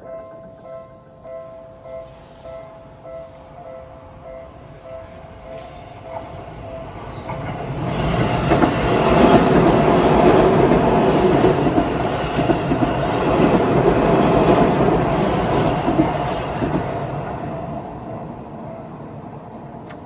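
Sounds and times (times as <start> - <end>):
electric train passing: 0.0 - 20.0
train wheels clattering on rail joints: 5.4 - 17.2.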